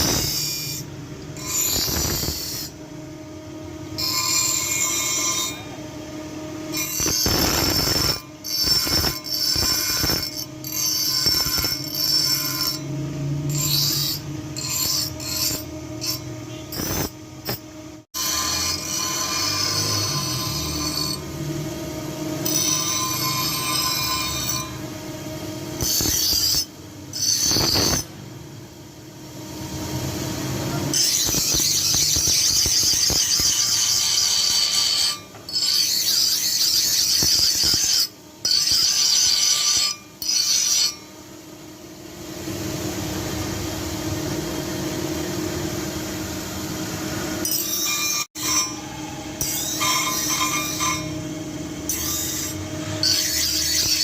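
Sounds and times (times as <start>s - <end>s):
blade scraping on abrasive: 0.0s - 2.8s, 6.7s - 17.6s, 18.2s - 21.4s, 22.4s - 24.9s, 25.8s - 28.1s, 30.8s - 41.1s, 51.9s - 54.0s.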